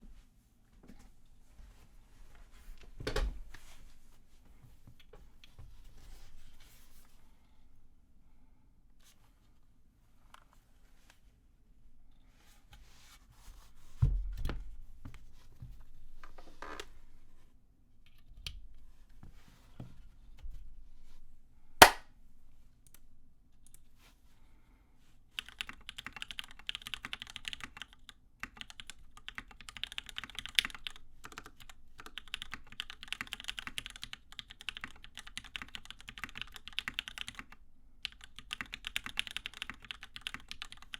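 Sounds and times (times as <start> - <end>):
fast typing on keyboard: 25.4 - 40.9
mechanical keyboard clicks: 25.4 - 40.9.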